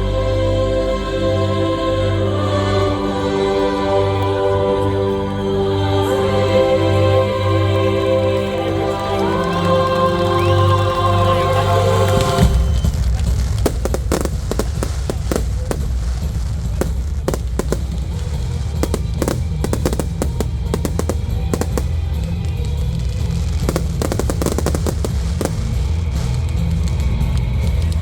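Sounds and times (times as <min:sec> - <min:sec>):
firework bangs and crackles: 0:12.0 - 0:28.0.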